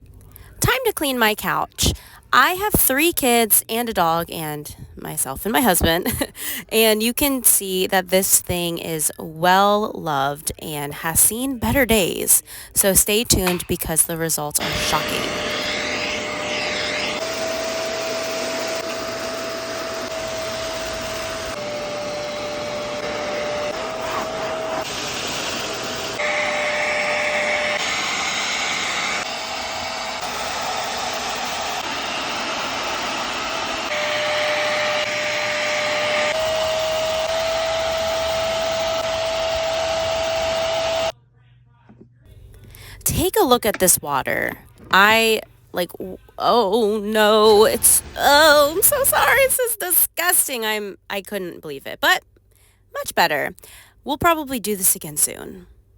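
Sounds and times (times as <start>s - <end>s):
carpet cleaner motor whine: 14.6s - 41.2s.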